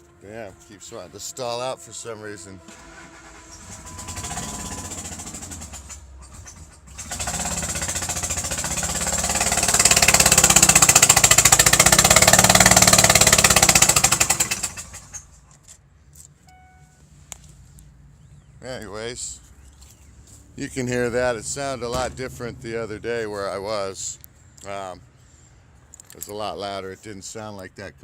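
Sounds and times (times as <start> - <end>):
car engine knocking puff: 2.6 - 15.4.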